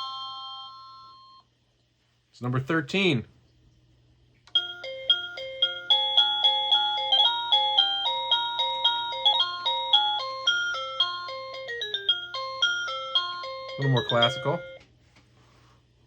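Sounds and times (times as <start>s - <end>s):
doorbell chime melody: 0.0s - 1.4s, 4.5s - 14.8s.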